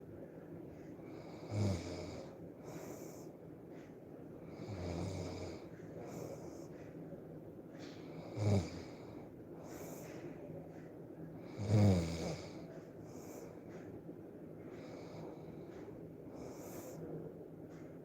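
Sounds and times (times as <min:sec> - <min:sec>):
person snoring: 0:01.2 - 0:02.3, 0:04.6 - 0:05.6, 0:08.2 - 0:09.1, 0:11.5 - 0:12.6.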